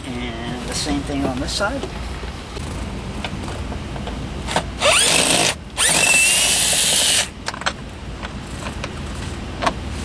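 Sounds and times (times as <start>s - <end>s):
power drill spinning: 4.8s - 7.3s.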